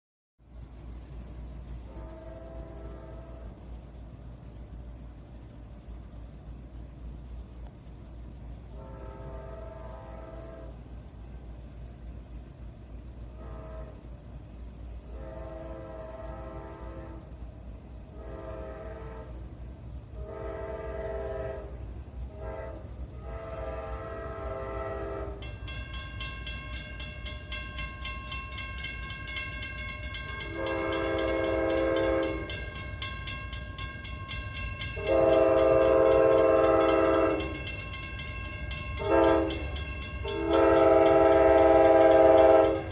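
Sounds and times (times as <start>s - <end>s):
steady high ringing: 0.5s - 42.9s
train air horn blasts: 1.8s - 3.8s, 8.7s - 11.0s, 13.2s - 27.9s, 28.5s - 42.9s.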